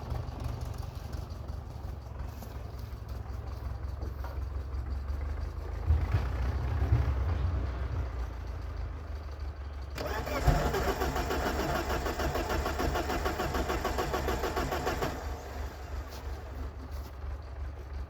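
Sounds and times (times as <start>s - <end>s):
car engine cranking without starting: 8.4s - 16.6s.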